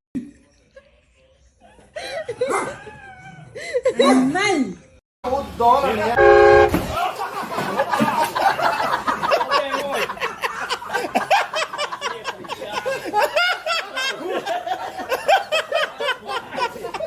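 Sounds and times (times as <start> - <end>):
people laughing: 1.6 - 4.1, 6.7 - 17.0.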